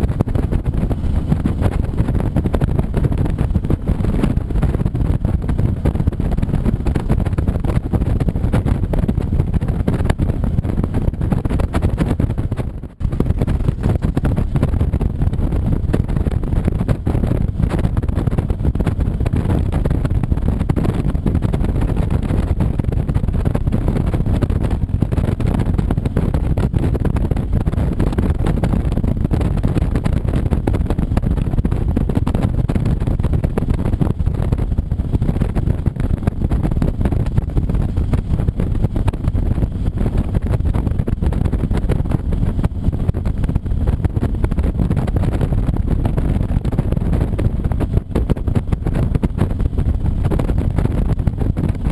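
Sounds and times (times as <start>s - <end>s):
motorcycle engine: 0.0s - 51.9s
wind rumble on microphone: 0.0s - 51.9s.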